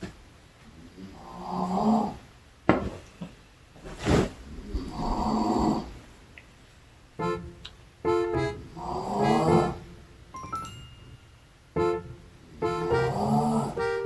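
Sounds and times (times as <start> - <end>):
short piano-like notes: 7.2 - 14.0
man snoring: 13.0 - 13.8.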